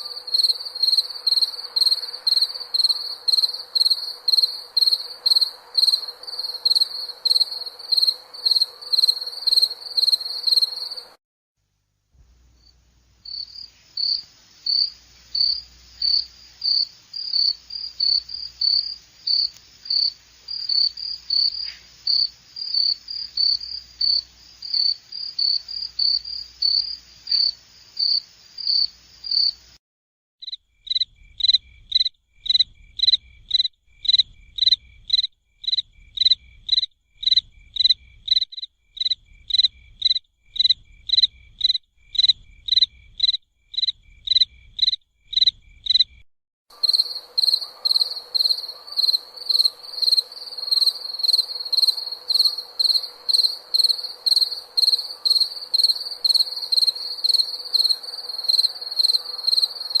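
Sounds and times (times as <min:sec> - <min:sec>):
crickets chirping: 0:00.0 - 0:11.2, 0:12.4 - 0:29.8, 0:30.4 - 1:00.0
faint background hiss: 0:00.0 - 0:29.8.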